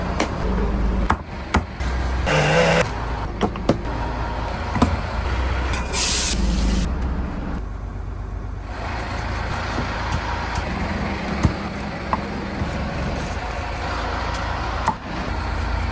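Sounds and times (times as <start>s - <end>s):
low engine rumble: 0.0s - 15.9s
short bursts of hissing: 5.9s - 6.9s.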